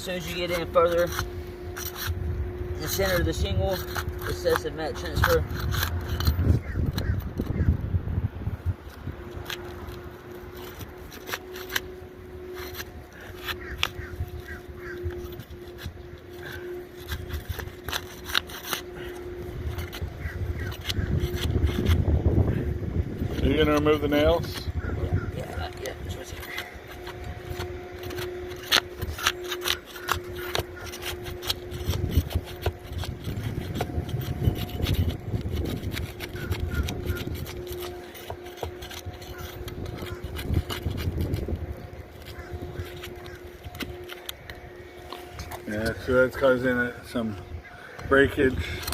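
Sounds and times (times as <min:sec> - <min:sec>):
metal tool scraping shingles: 0:00.0 - 0:07.7, 0:08.8 - 0:48.9
faint steady hum: 0:00.0 - 0:48.9
shingles cracking as pried loose: 0:26.4 - 0:45.6.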